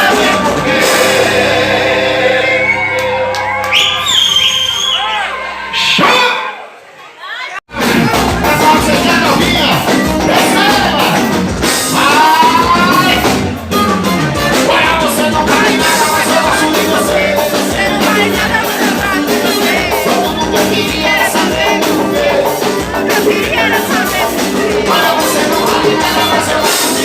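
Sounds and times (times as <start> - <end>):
live band music: 0.0 - 4.4, 7.7 - 27.0
person singing: 7.7 - 27.0.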